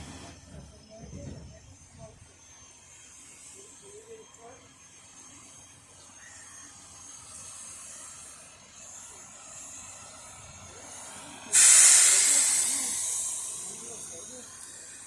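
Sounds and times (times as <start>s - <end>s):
faint steady site noise hiss: 1.7s - 15.0s
compressed air hiss: 7.3s - 15.0s.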